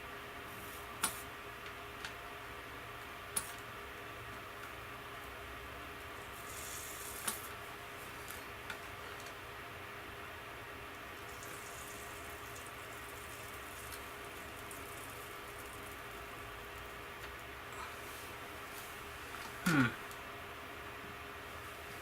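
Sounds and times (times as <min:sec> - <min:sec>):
steady low hum: 0:00.0 - 0:22.0
soldering iron sizzling: 0:03.3 - 0:03.6, 0:06.0 - 0:09.3, 0:11.0 - 0:19.5.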